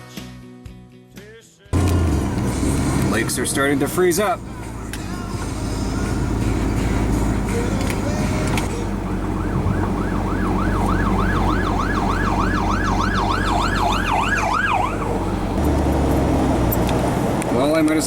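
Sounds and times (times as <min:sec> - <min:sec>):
vehicle engine drone: 0:01.8 - 0:18.0
siren in fast yelp: 0:08.9 - 0:15.4.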